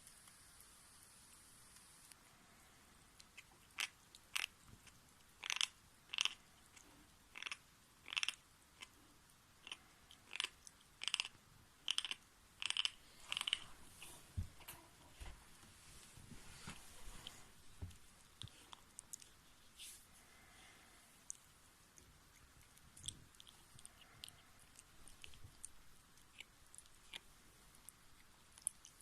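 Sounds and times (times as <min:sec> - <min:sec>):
kitten teeth scraping: 0:03.2 - 0:09.0, 0:09.6 - 0:14.2, 0:22.0 - 0:29.0.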